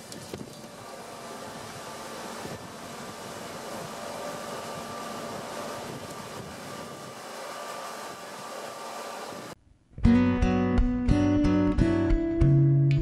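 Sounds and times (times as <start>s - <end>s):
mechanical hum: 0.0s - 9.9s.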